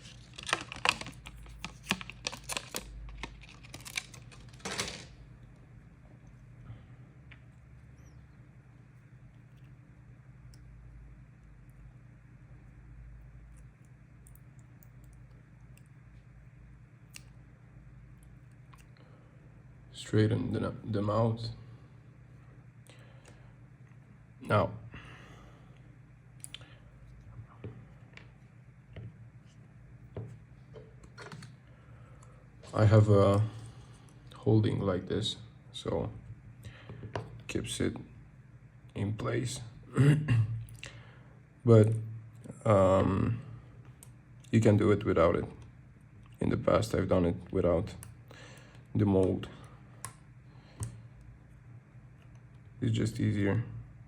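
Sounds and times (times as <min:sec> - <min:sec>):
small hard parts clicking and tapping: 0:00.1 - 0:05.1.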